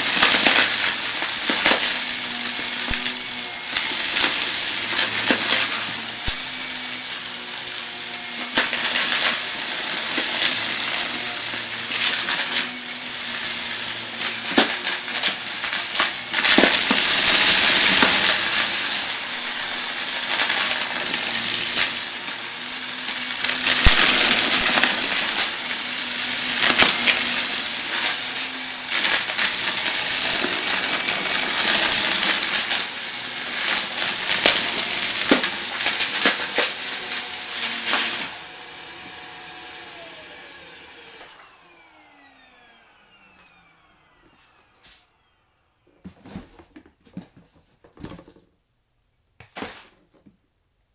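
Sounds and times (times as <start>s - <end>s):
vacuum cleaner sucking up debris: 0.0s - 46.7s.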